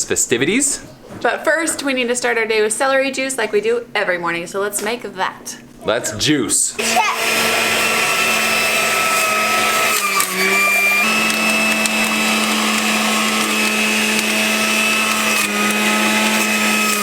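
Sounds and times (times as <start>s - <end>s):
electric juicer motor whine: 6.8s - 17.0s.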